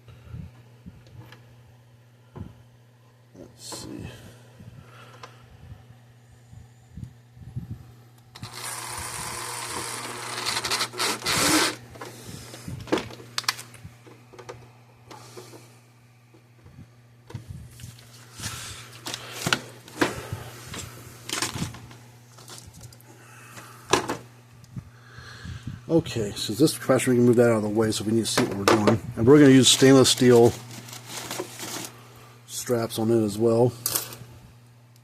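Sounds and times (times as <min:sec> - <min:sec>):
steady low hum: 0:00.0 - 0:35.0
rustling of parts: 0:08.4 - 0:15.7, 0:17.7 - 0:23.1, 0:28.3 - 0:32.0.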